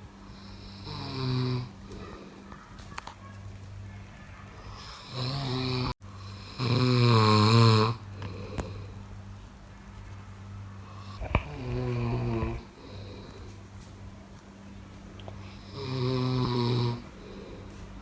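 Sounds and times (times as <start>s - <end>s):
steady low hum: 0.0s - 18.0s
person snoring: 0.3s - 2.4s, 4.8s - 9.0s, 10.9s - 13.6s, 15.4s - 17.7s.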